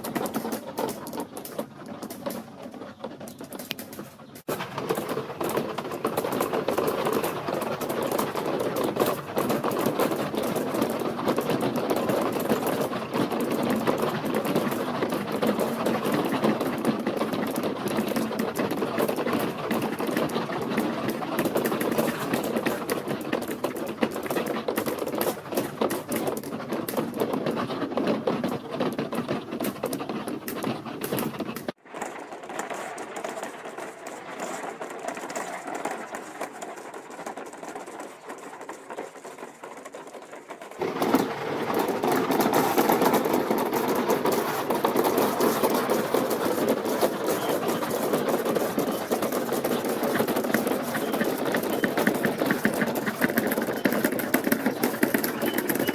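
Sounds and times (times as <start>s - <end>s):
marbles rattling on plastic track: 32.0s - 55.9s.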